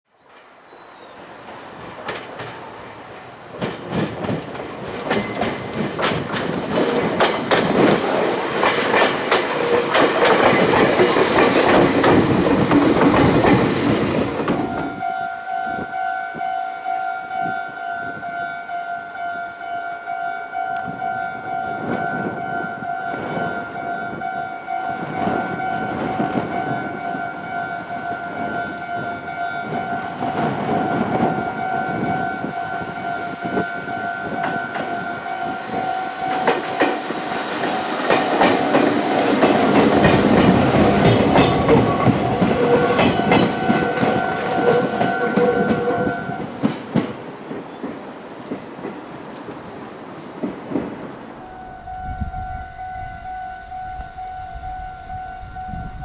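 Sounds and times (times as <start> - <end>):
train wheels clattering over rails: 1.4 - 14.8, 29.7 - 51.4
level-crossing alarm ringing: 14.5 - 46.5, 51.4 - 56.0.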